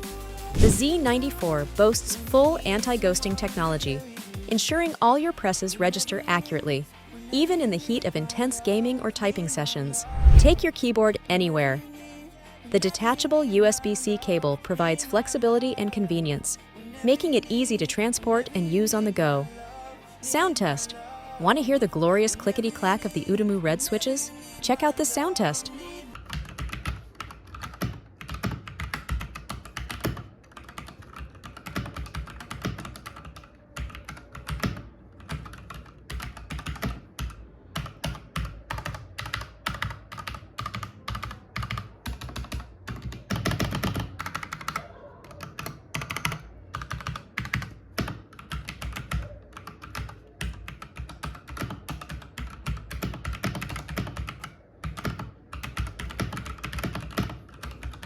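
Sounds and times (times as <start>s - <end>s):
mechanical keyboard typing: 26.2s - 58.0s.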